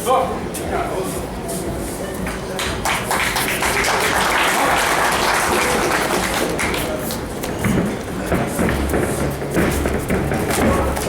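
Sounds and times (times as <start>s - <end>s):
hands clapping in applause: 2.3s - 7.7s.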